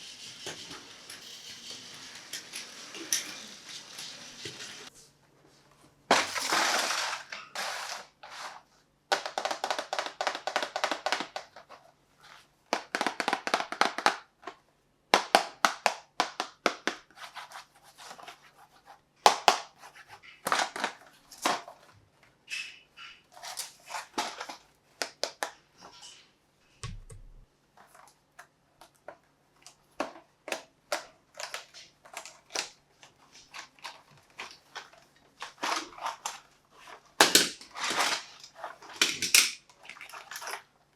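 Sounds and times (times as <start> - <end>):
plastic toys clicking and clattering: 0.0 - 4.9, 6.1 - 8.4, 9.1 - 11.9, 12.7 - 14.6, 19.3 - 26.3, 27.8 - 40.9.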